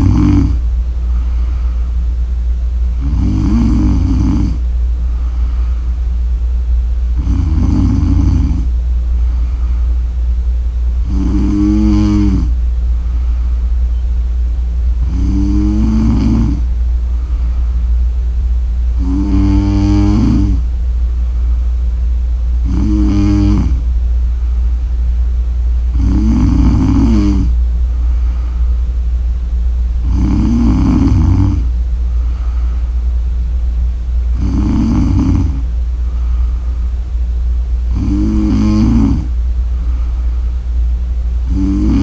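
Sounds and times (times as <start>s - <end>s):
woman snoring: 0.0s - 0.7s, 2.9s - 4.6s, 7.2s - 8.7s, 11.0s - 12.6s, 15.0s - 16.7s, 18.9s - 20.7s, 22.6s - 23.9s, 25.9s - 27.6s, 30.0s - 32.8s, 34.3s - 36.5s, 37.9s - 39.4s, 41.4s - 42.0s
steady low hum: 0.0s - 42.0s.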